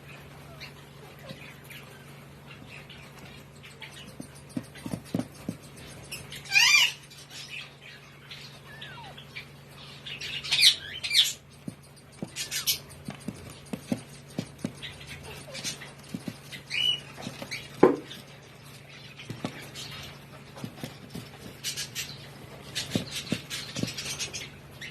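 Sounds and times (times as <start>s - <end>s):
parakeet chicks squawking: 0.0s - 24.9s
light taps and scratches: 3.2s - 6.4s, 11.5s - 24.5s.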